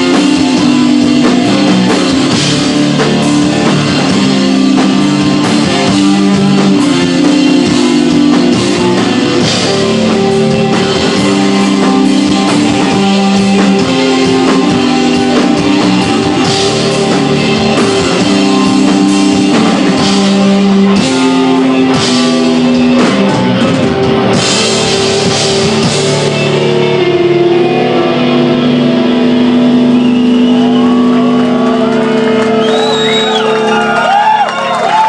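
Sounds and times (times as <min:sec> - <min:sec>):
drum kit with cymbal crashes: 0:00.0 - 0:26.6
bass guitar: 0:00.0 - 0:35.0
electric guitar: 0:00.0 - 0:35.0.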